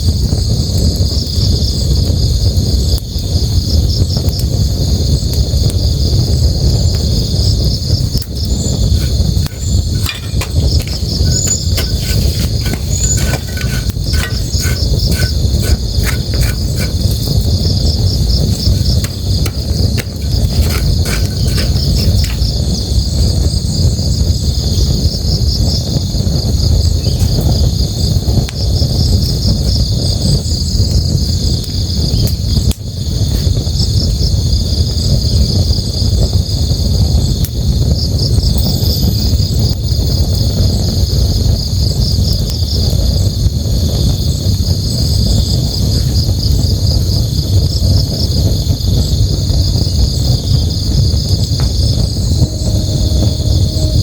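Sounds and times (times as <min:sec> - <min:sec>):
campfire crackling and popping: 0:03.8 - 0:23.8
crickets chirping: 0:05.1 - 0:42.9, 0:44.1 - 0:54.0.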